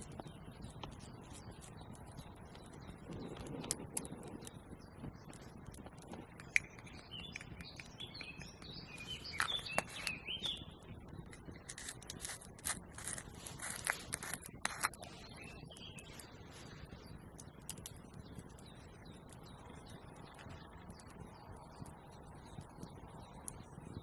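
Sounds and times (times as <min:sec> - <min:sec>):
small birds chirping: 0:00.0 - 0:24.0
sharp clicking scrapes: 0:05.7 - 0:10.6, 0:11.2 - 0:15.7.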